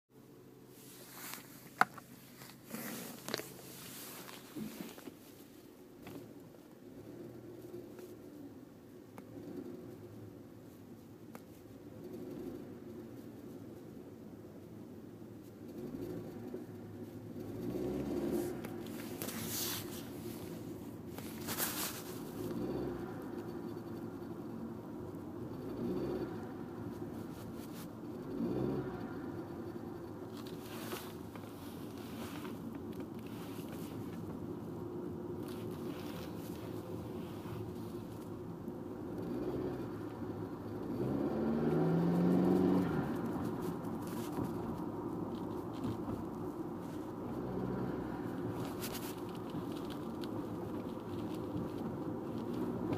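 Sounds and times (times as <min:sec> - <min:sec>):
scratchy rasping noise: 0:00.8 - 0:05.2
car engine accelerating: 0:15.6 - 0:52.9.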